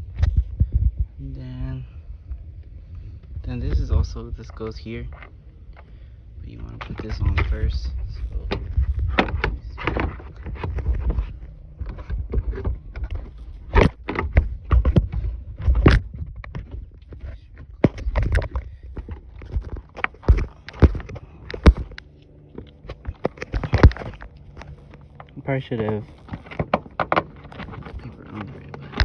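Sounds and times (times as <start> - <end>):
low rumble: 0.0 - 26.3
plastic trim clicking and knocking: 26.3 - 28.0.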